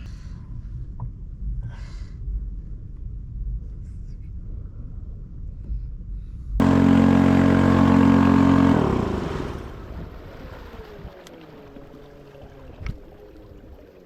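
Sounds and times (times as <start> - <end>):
outboard motor running: 6.6 - 13.1.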